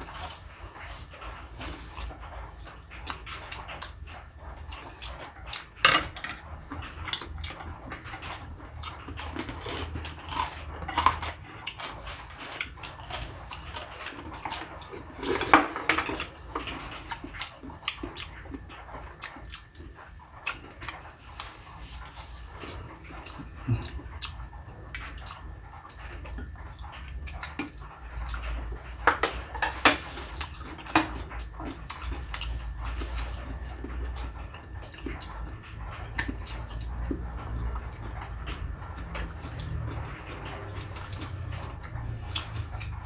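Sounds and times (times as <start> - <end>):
chopsticks and spoons clicking on bowls: 5.5 - 8.4, 14.0 - 16.9.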